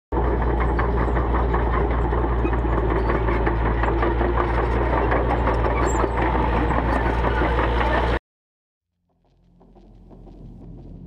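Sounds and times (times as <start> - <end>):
excavator diesel engine idling: 0.2 - 8.2.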